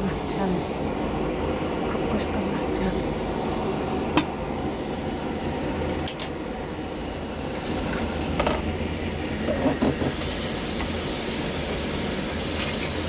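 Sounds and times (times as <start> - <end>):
pot boiling with bubbling: 6.8 - 13.0.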